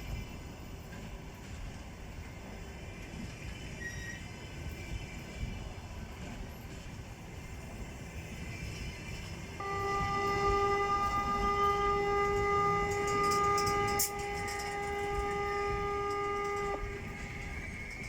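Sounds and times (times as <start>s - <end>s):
low rumble of arriving train: 0.0s - 18.0s
locomotive horn blast: 9.6s - 17.7s.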